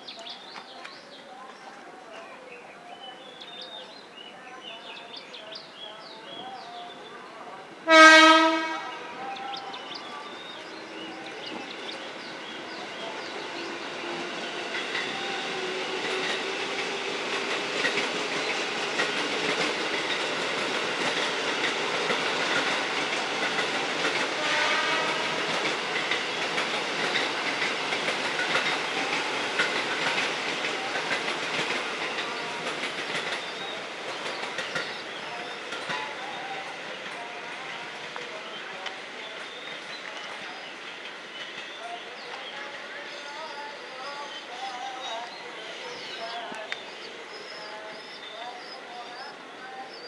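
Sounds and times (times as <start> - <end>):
train wheels clattering on rails: 9.5 - 43.5.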